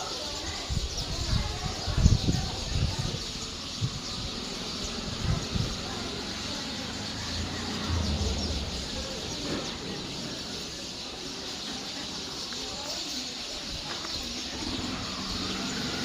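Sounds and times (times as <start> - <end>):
small birds chirping: 0.0 - 16.0
low rumble: 6.9 - 10.4.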